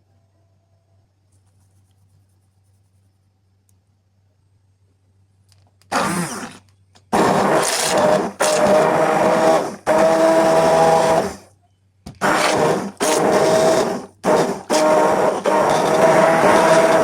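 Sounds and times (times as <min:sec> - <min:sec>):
blender motor pulsing: 0:05.9 - 0:11.5, 0:12.2 - 0:17.0.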